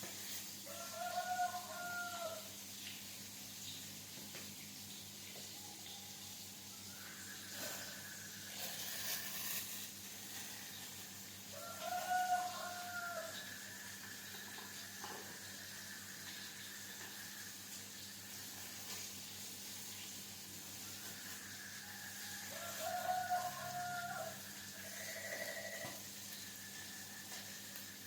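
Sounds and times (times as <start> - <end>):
rooster crowing: 0.6 - 2.5, 5.5 - 9.6, 11.5 - 17.6, 20.8 - 27.2.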